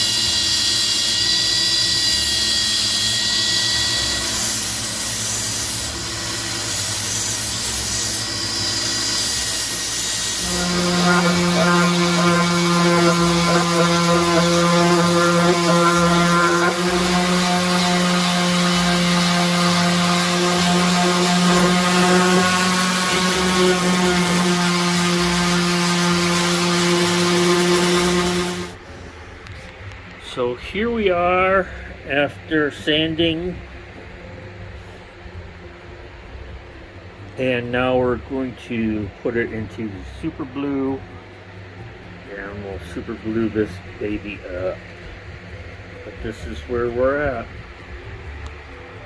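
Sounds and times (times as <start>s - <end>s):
electric sander on metal: 0.0s - 29.0s.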